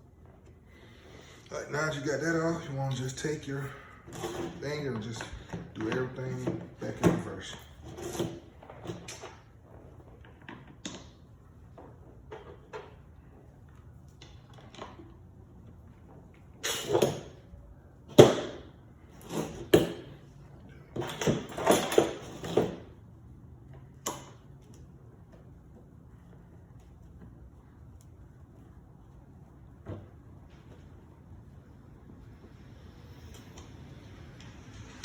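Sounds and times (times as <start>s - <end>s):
knocks and clatter of parts: 18.1s - 20.3s, 20.9s - 23.0s.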